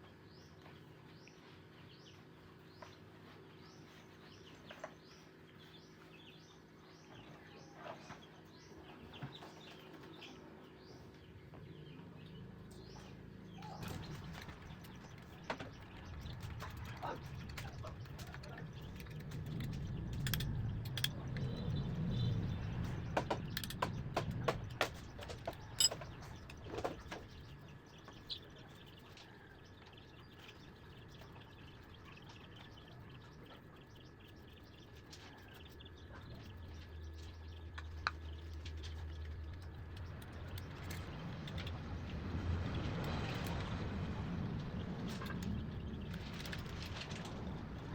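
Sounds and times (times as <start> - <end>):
sharp clicks and light knocks: 22.8 - 28.3.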